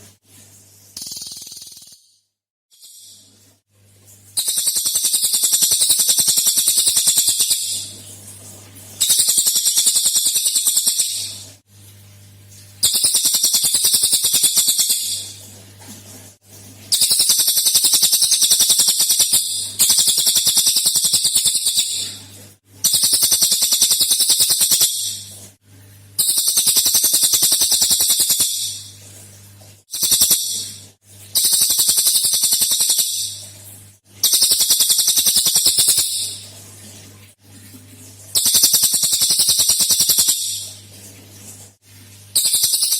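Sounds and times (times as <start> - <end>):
songbird trilling: 1.0 - 2.0, 4.4 - 7.8, 9.0 - 11.3, 12.8 - 15.3, 17.0 - 22.1, 22.9 - 25.1, 26.2 - 28.8, 29.9 - 30.7, 31.4 - 33.4, 34.2 - 36.4, 38.4 - 40.6, 42.4 - 42.9.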